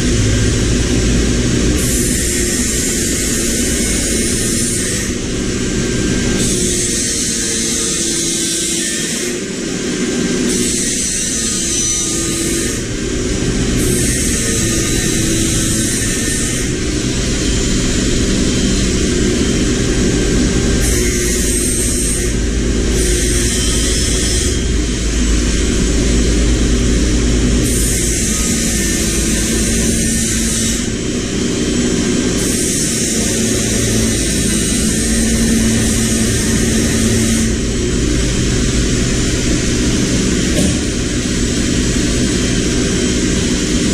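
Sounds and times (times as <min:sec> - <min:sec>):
machine motor humming: 0:12.3 - 0:43.9.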